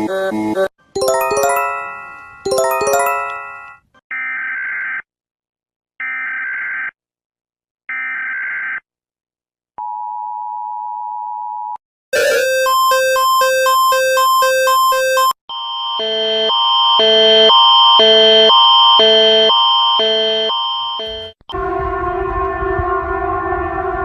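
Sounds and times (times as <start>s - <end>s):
electronic chime: 1.0s - 3.8s.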